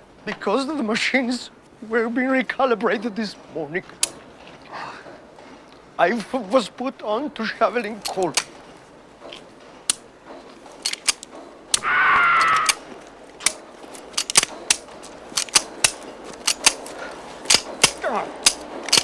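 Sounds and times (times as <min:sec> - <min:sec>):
sharp metallic clicks and knocks: 0:07.8 - 0:19.0.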